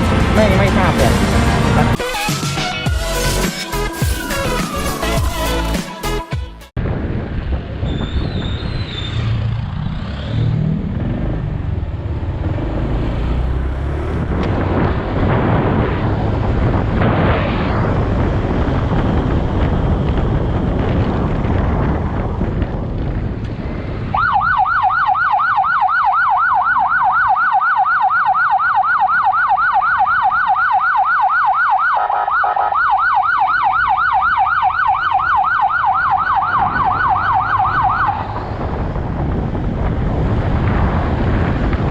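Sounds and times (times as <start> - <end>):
road noise: 0.0 - 41.9
wind noise: 6.8 - 25.4, 33.2 - 41.9
emergency siren yelping: 24.1 - 38.7.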